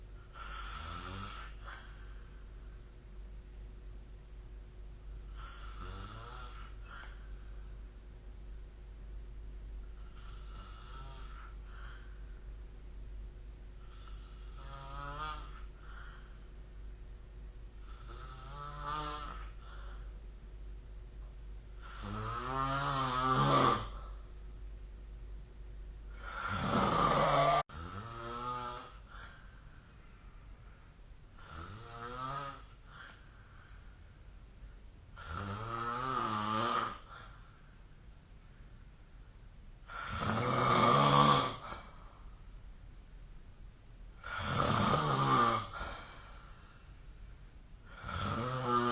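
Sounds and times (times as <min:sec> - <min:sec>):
person snoring: 0:00.3 - 0:02.1, 0:05.3 - 0:07.3, 0:10.0 - 0:12.2, 0:13.8 - 0:16.4, 0:17.8 - 0:20.1, 0:21.8 - 0:24.2, 0:26.1 - 0:29.4, 0:31.4 - 0:33.6, 0:35.2 - 0:37.3, 0:39.8 - 0:42.0, 0:44.2 - 0:46.6, 0:47.8 - 0:48.9.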